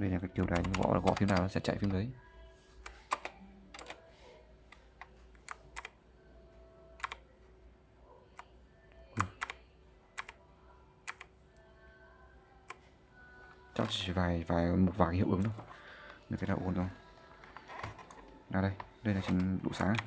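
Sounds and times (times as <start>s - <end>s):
mechanical keyboard keystroke clicks: 0.5s - 2.0s, 2.8s - 4.0s, 7.0s - 7.2s, 9.2s - 9.6s, 10.2s - 10.4s, 11.1s - 11.3s.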